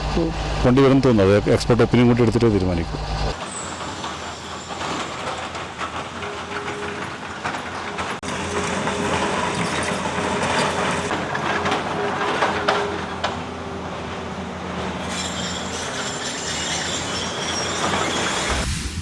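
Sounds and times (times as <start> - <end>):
heavy machinery engine hum: 0.0 - 18.5
high metallic squealing: 2.9 - 7.1, 8.3 - 13.2, 15.0 - 18.6.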